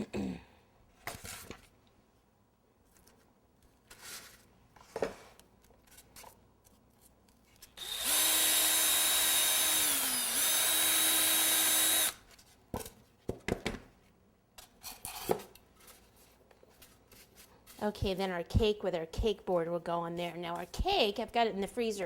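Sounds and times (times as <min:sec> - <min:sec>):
electric drill boring wood: 0:07.8 - 0:12.2.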